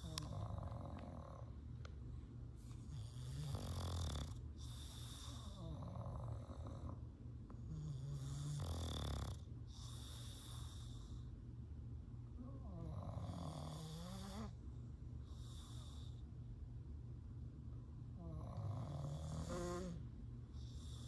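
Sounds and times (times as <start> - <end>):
dog snoring: 0.0 - 1.6, 2.7 - 7.0, 7.6 - 11.3, 12.4 - 14.6, 15.2 - 16.2, 18.2 - 21.0.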